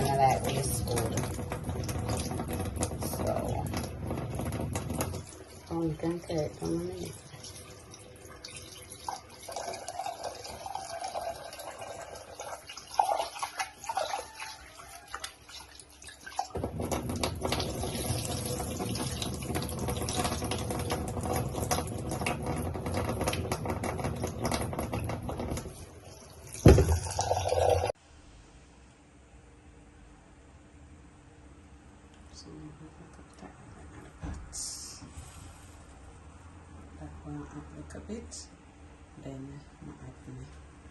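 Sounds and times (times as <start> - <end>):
tap running into a sink: 0.0 - 7.1, 16.3 - 25.8, 26.5 - 27.9.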